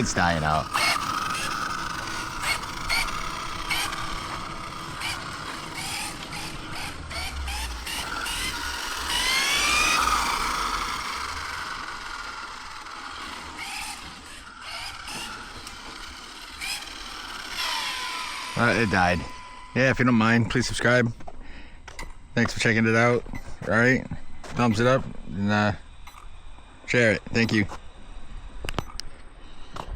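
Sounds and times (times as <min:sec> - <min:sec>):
drivetrain clicks: 0:00.0 - 0:25.3
rc truck motor whining: 0:00.0 - 0:29.9.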